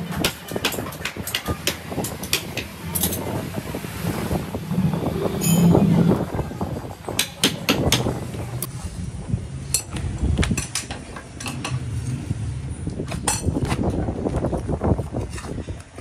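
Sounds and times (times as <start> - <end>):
low rumble: 2.7 - 14.5
metal clinks and knocks: 5.4 - 5.9.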